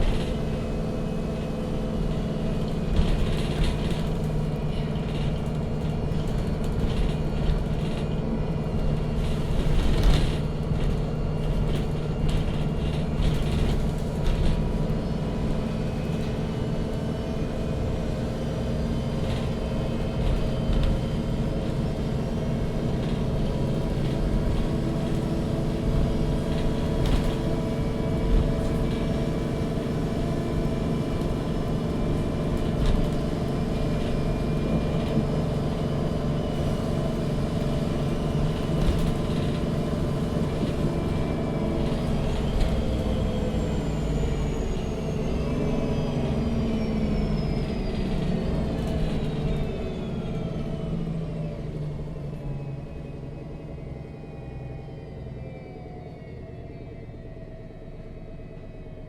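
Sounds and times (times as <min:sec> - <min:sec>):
bus engine hum: 0:00.0 - 0:59.0
clatters and rattles: 0:02.5 - 0:15.4, 0:25.9 - 0:35.8, 0:36.4 - 0:41.2.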